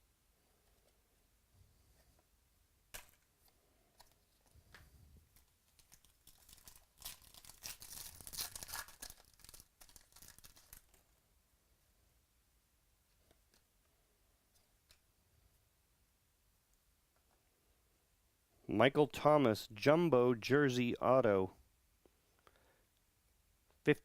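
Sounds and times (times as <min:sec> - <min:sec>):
wrapper crackling and tearing: 0:05.4 - 0:11.1.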